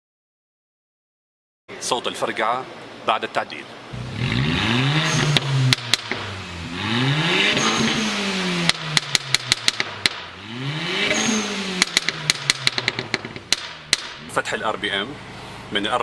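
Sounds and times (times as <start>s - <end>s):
car engine revving: 3.9s - 15.9s
exhaust popping and crackling: 4.0s - 15.2s.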